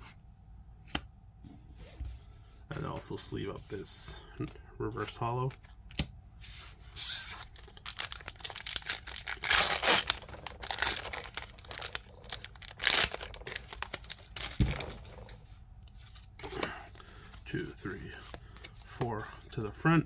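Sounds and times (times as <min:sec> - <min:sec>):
foil wrapper tearing and crinkling: 0:07.0 - 0:15.4.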